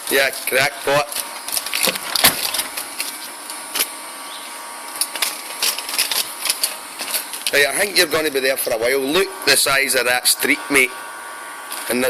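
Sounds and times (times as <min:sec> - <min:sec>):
dry leaves crackling: 0:00.2 - 0:07.7.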